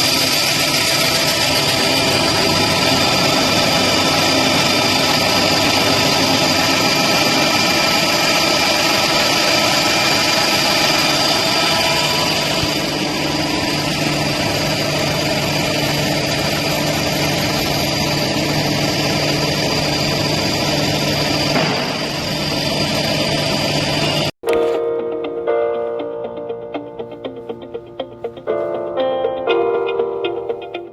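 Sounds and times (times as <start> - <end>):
deburring machine drone and whine: 0.0 - 24.7.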